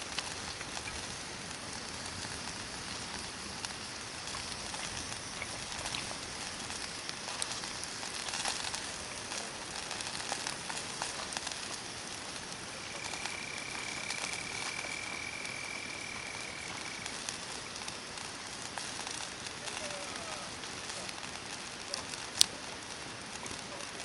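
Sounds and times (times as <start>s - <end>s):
campfire crackling and popping: 0.0s - 24.0s
high thin whistle: 12.8s - 17.2s.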